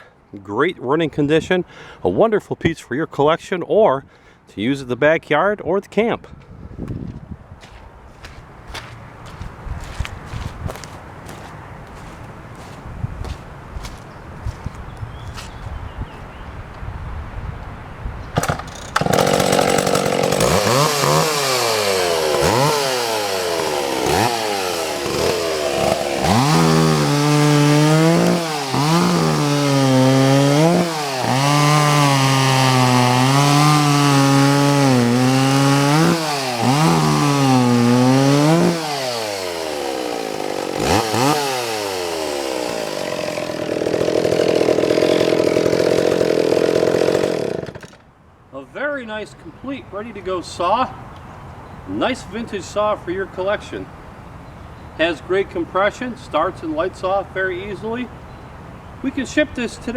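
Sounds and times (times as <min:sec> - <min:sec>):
chainsaw engine revving: 0:18.4 - 0:48.0.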